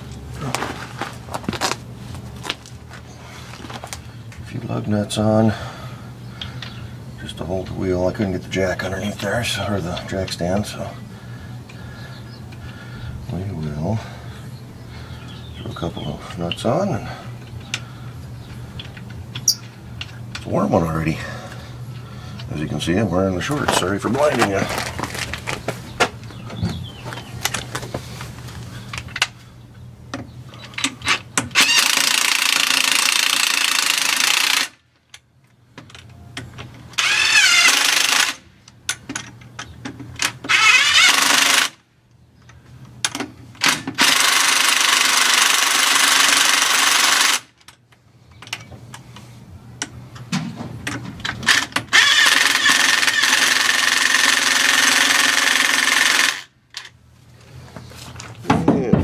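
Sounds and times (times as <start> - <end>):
impact wrench bursts: 30.8 - 34.8, 37.0 - 38.5, 40.2 - 41.8, 43.6 - 47.5, 51.4 - 56.6.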